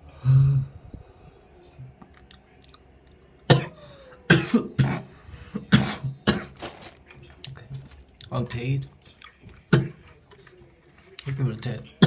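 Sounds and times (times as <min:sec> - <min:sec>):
man coughing hard: 0:03.5 - 0:06.6.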